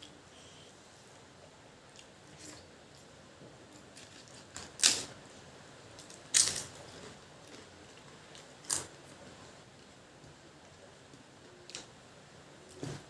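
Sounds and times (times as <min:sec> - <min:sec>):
loud crisp crunches of eating: 0:04.0 - 0:05.2, 0:06.0 - 0:09.0.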